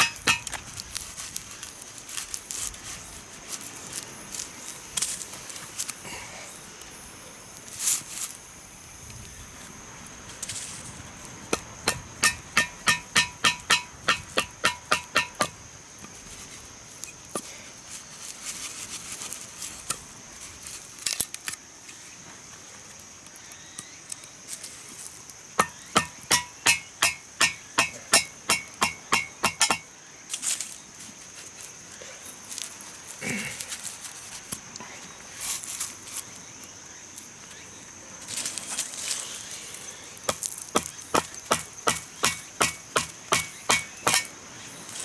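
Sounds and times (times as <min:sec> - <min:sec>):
scattered knocks: 0:11.5 - 0:15.6.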